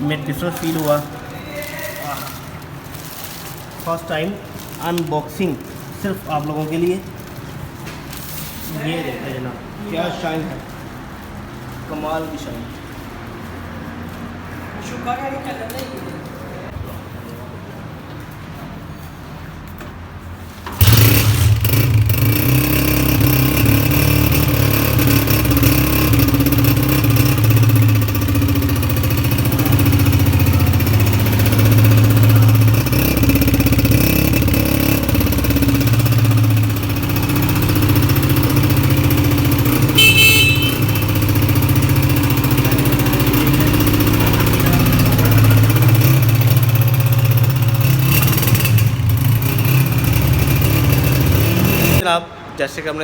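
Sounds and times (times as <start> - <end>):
motorcycle engine kick-started: 20.7 - 52.0.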